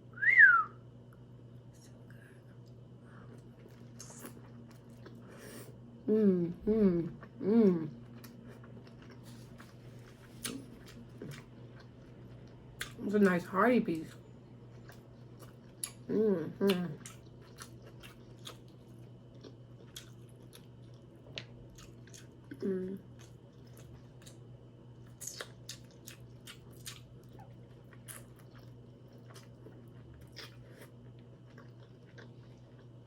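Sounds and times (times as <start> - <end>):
faint electrical hum: 0.0 - 33.0
person humming mm: 6.1 - 8.0, 22.5 - 23.0
wet chewing and mouth clicks: 8.1 - 13.0, 16.7 - 22.4, 23.2 - 32.9.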